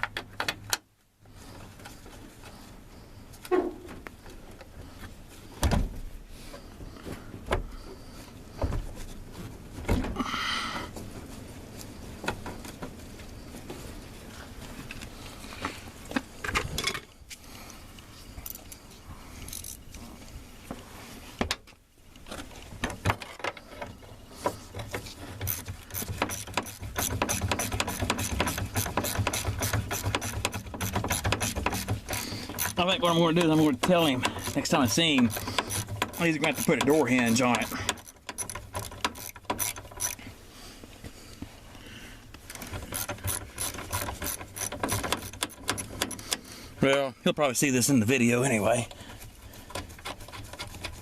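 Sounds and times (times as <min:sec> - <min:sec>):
ratchet wrench clicking: 0:34.2 - 0:40.2.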